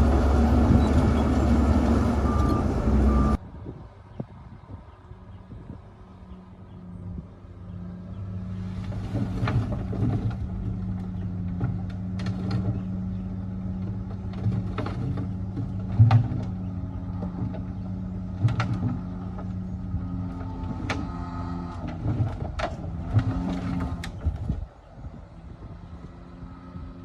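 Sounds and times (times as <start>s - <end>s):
heavy diesel engine running: 0.0s - 3.4s.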